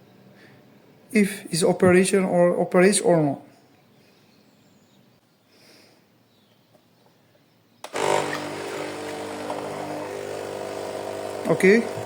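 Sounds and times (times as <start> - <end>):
coffee machine pump humming: 7.9 - 12.0.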